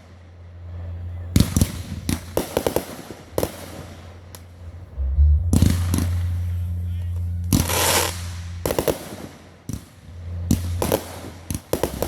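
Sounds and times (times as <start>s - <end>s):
steady low rumble: 0.0s - 12.0s
fireworks bangs: 1.4s - 4.5s, 7.5s - 12.0s.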